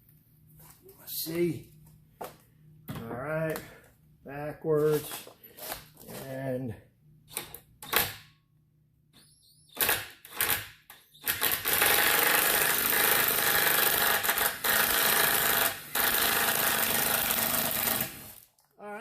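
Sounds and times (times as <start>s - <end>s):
power drill running: 11.2s - 18.4s.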